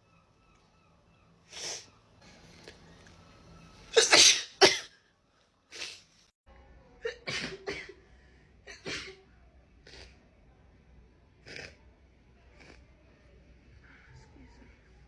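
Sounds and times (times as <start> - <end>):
woman sneezing: 4.0 - 4.9.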